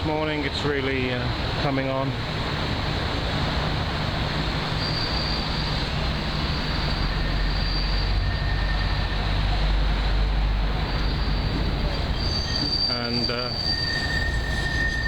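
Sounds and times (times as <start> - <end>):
steady rushing outdoor noise: 0.0 - 15.0
rail wheels squealing: 4.5 - 15.0.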